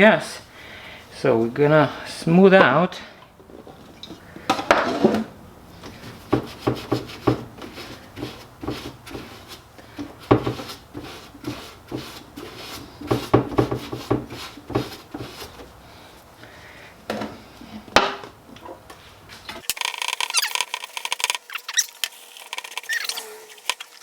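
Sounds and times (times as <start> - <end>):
hands rubbing and scraping: 10.4 - 15.7.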